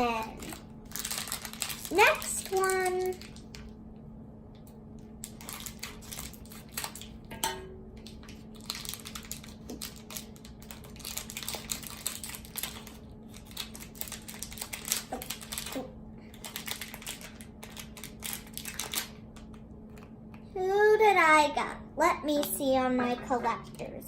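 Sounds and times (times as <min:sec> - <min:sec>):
plastic wrapper crinkling: 0:00.0 - 0:03.7, 0:05.1 - 0:07.3, 0:08.0 - 0:20.1.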